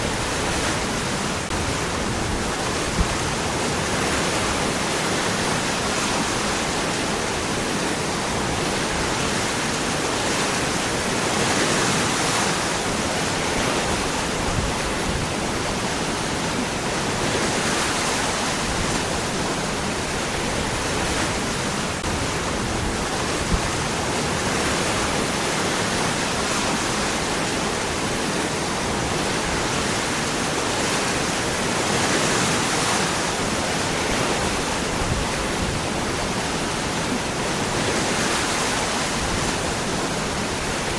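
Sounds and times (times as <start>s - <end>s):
waterfall rushing over rocks: 0.0s - 40.9s.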